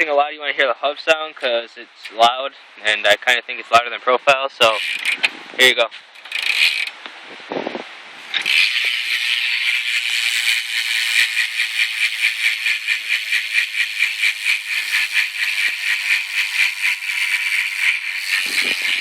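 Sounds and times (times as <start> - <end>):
bike freewheel clicking: 4.8 - 5.3, 6.1 - 7.0, 8.3 - 19.0.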